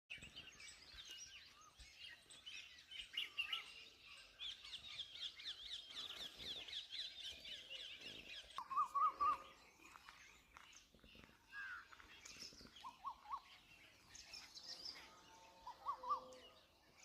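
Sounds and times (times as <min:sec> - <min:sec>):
small birds chirping: 0:00.1 - 0:17.0.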